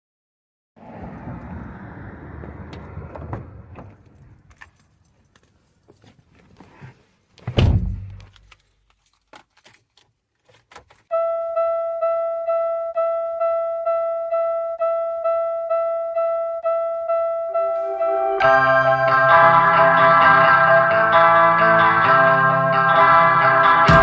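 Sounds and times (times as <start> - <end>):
keys jangling: 4.1 - 6.3, 7.2 - 11.0
loud heavy thud: 7.5 - 8.2
keyboard repeating a single note: 11.1 - 20.7.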